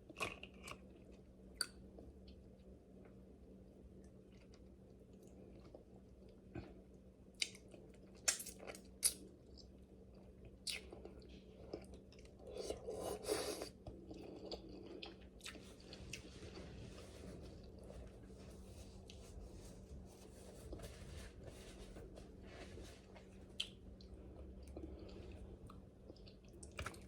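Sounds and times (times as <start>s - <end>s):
chewing: 7.4s - 16.7s, 23.2s - 27.0s.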